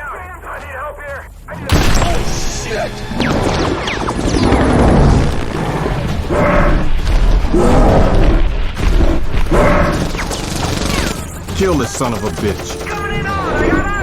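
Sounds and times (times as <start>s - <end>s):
heavy low rumble: 1.6s - 10.0s
booming crashes: 1.7s - 10.0s.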